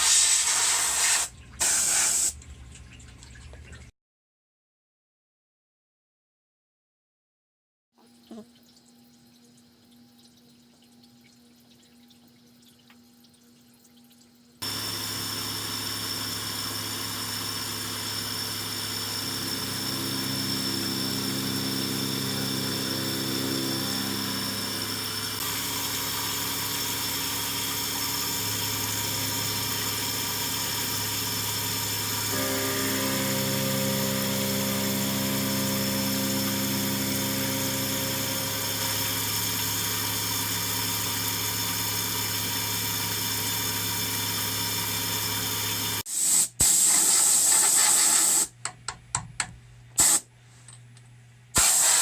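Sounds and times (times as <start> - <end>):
milling machine running with whine: 14.6 - 46.0.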